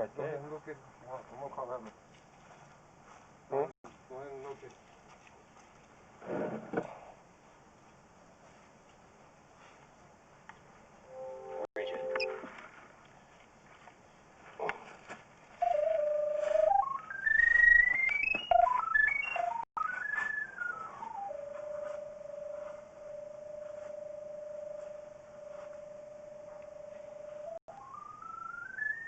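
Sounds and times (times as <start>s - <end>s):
pipe locator electronic tone: 11.1s - 12.5s, 15.6s - 29.0s.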